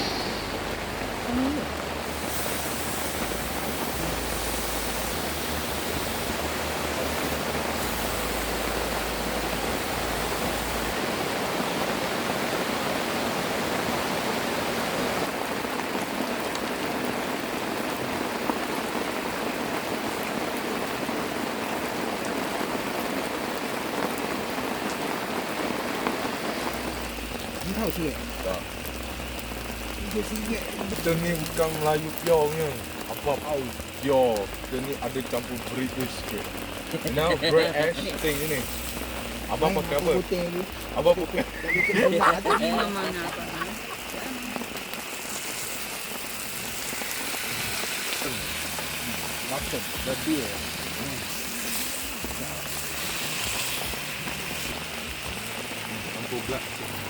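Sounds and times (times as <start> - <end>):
deep rumble: 0.0 - 11.2
water rushing: 0.0 - 57.0.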